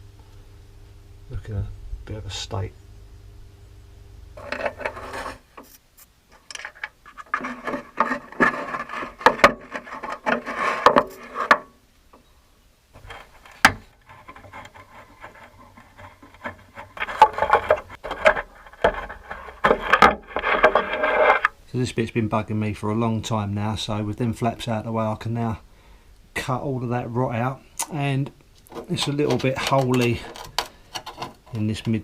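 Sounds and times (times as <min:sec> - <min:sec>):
scraping and rubbing: 0:04.3 - 0:11.8, 0:13.0 - 0:21.6, 0:28.6 - 0:32.0
sharp knocks: 0:13.6 - 0:13.9.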